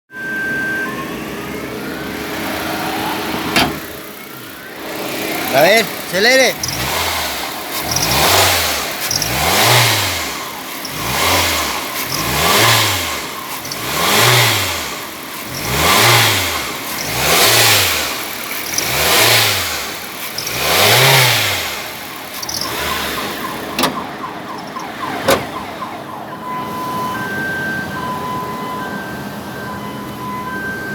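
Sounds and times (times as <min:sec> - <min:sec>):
vehicle engine revving: 0:01.2 - 0:25.7
sharp clicks: 0:07.7 - 0:09.8, 0:18.5 - 0:19.5, 0:22.3 - 0:23.0.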